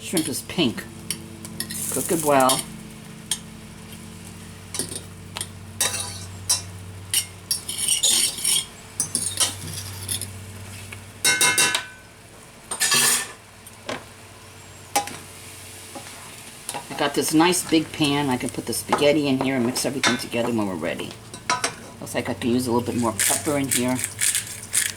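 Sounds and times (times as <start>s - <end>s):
metal utensil scraping frying pan: 1.1s - 3.5s, 4.7s - 10.4s, 12.8s - 13.4s, 22.6s - 24.9s.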